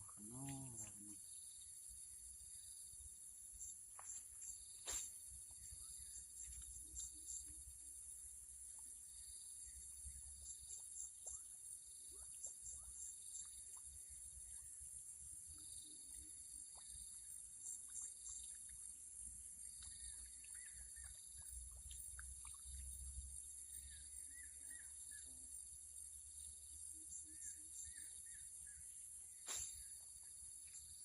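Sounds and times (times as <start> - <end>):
insects shrilling and chirring: 3.5 - 7.6, 27.3 - 31.0.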